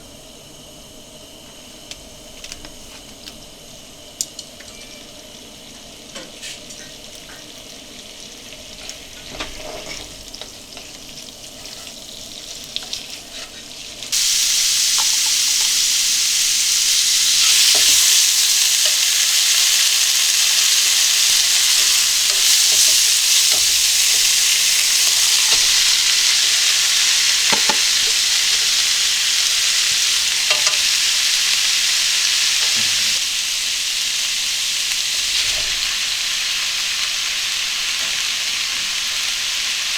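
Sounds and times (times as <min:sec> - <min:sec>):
food sizzling in a pan: 0:03.9 - 0:39.9
utensil tapping pan: 0:27.5 - 0:28.2.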